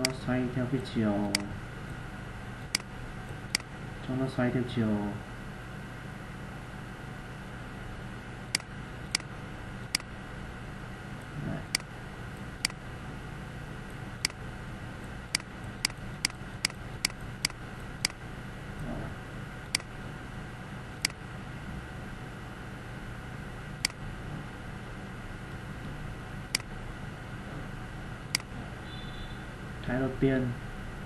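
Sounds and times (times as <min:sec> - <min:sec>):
computer mouse clicking: 0:00.0 - 0:00.2, 0:01.2 - 0:02.0, 0:02.6 - 0:03.7, 0:08.5 - 0:09.3, 0:09.9 - 0:10.1, 0:11.7 - 0:11.9, 0:12.6 - 0:12.8, 0:15.0 - 0:18.2, 0:19.7 - 0:19.9, 0:21.0 - 0:21.2, 0:28.3 - 0:28.5
low background hum: 0:00.0 - 0:31.0.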